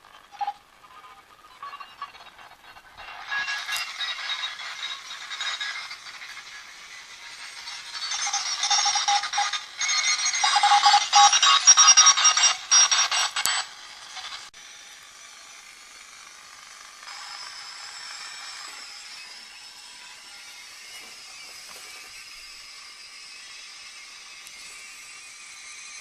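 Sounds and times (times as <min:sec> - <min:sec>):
faint radio hiss: 0:00.0 - 0:03.9
radio whistling tones: 0:00.2 - 0:14.5
radio crackling clicks: 0:07.8 - 0:14.5.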